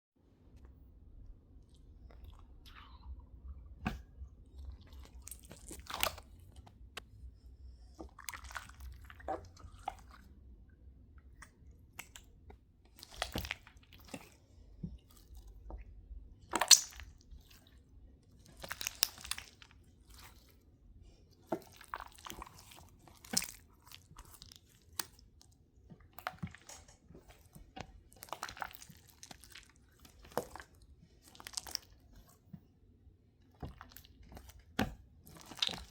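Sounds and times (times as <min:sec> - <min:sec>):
slime squelching: 0:00.6 - 0:35.9.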